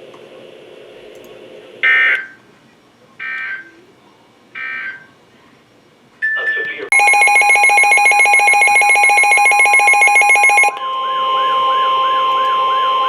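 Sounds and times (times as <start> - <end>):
warbling data tones: 6.9 - 10.7.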